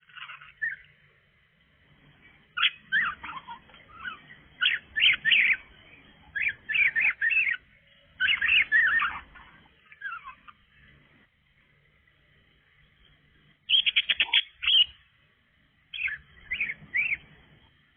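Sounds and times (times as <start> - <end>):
budgerigar chattering: 0.0 - 1.0, 2.6 - 10.7, 13.7 - 15.0, 15.9 - 17.2.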